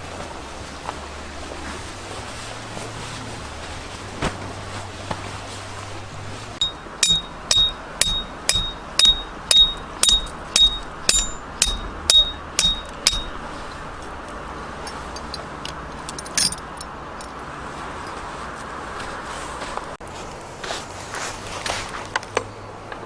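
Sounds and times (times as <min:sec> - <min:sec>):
sharp metallic clink: 0:06.6 - 0:13.5
hammer blows on metal: 0:06.6 - 0:13.6.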